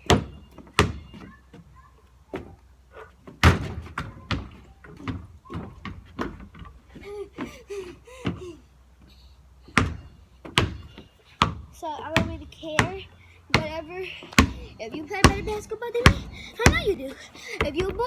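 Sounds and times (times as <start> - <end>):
basketball bouncing: 0.0 - 1.3, 3.2 - 6.7, 9.7 - 18.0.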